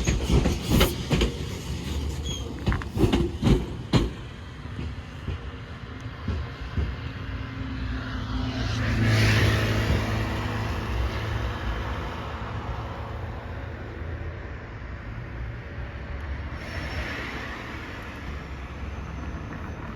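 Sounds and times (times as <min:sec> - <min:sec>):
vehicles driving past: 0:05.6 - 0:19.9.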